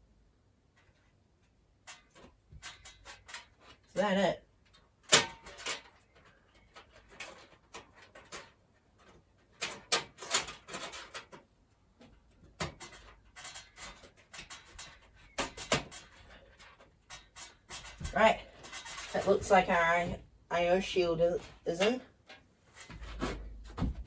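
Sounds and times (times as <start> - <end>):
metal shield clicking and scraping: 5.0 - 20.2.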